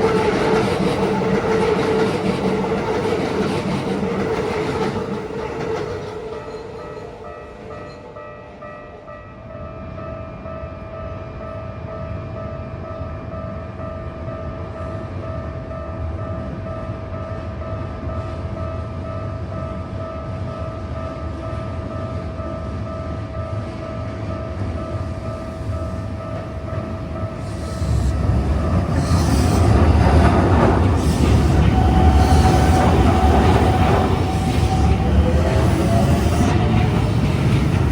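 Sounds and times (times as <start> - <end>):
train passing with heavy rumble: 0.0 - 9.6, 13.1 - 37.9
wheels clattering over rail joints: 25.9 - 37.9.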